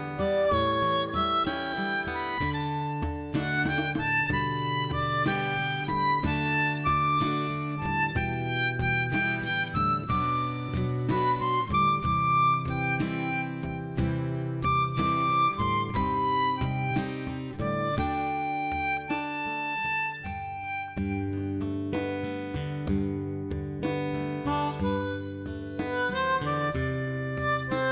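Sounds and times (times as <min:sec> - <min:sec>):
melody of short held notes: 0:00.2 - 0:21.5.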